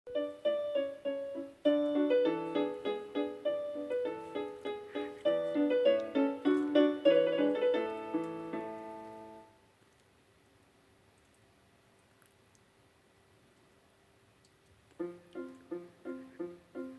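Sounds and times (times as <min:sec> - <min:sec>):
piano-like keyboard melody: 0:00.1 - 0:09.6, 0:15.0 - 0:16.9.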